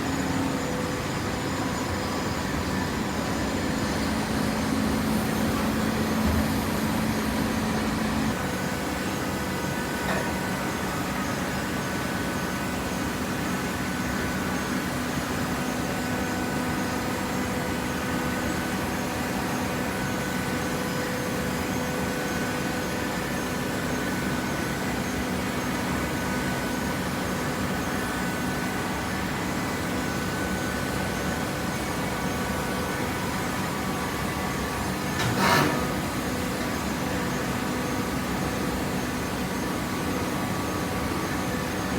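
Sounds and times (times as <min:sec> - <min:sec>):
baler machine hum: 0:00.0 - 0:12.4, 0:31.7 - 0:41.9
machine whine: 0:00.0 - 0:41.9.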